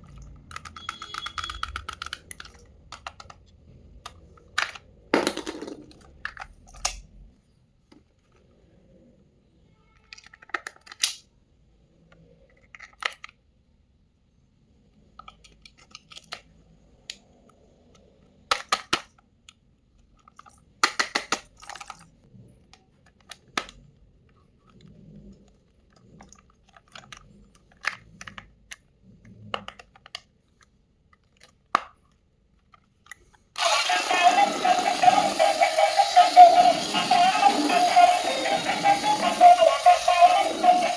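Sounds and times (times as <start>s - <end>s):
toy packaging clicks and rustles: 0.0s - 7.0s, 10.0s - 11.2s, 18.4s - 28.9s, 29.5s - 40.9s
loud music: 33.6s - 40.9s.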